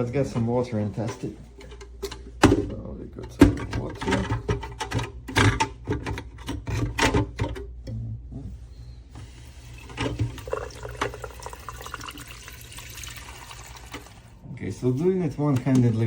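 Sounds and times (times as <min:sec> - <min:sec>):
water pouring into plastic tank: 0:09.6 - 0:14.4.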